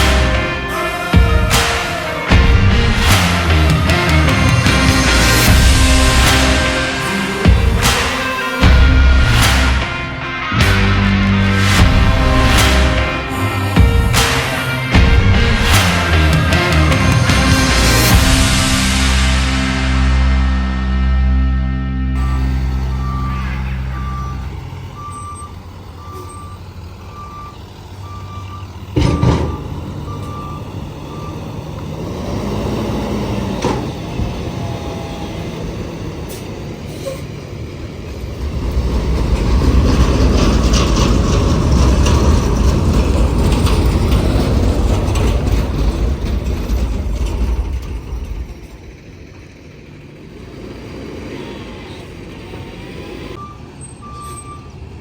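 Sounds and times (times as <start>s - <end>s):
sharp bang: 0.0s - 24.8s
reversing beeper: 0.0s - 35.7s, 53.0s - 54.8s
truck engine rumbling: 0.0s - 55.0s.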